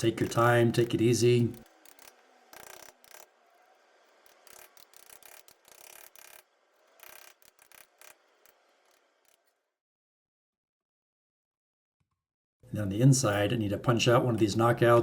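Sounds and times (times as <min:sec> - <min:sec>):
chisel tapping and scraping: 0:00.0 - 0:03.4.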